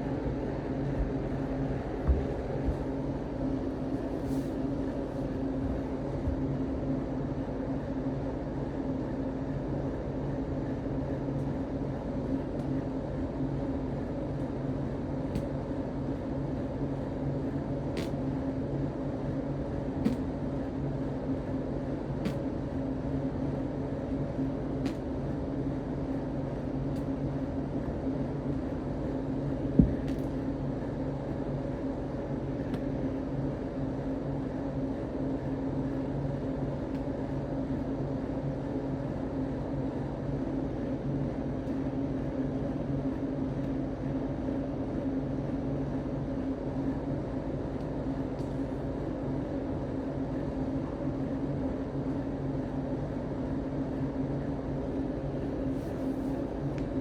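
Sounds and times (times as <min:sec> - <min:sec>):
low machine hum: 0:00.0 - 0:57.0.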